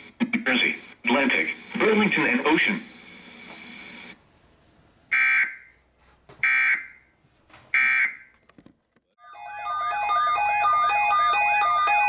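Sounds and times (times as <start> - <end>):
repeating electronic alert tone: 9.2 - 12.0.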